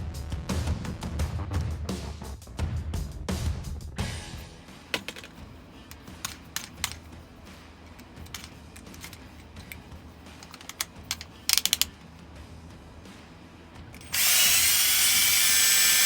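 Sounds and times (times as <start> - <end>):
clicks and taps of small tools: 5.0 - 7.1, 7.9 - 9.8, 10.4 - 12.2.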